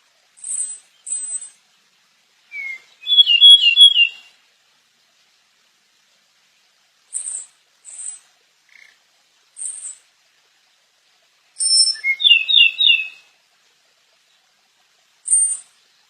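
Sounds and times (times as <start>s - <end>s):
bird singing: 2.5s - 4.2s, 11.6s - 13.2s.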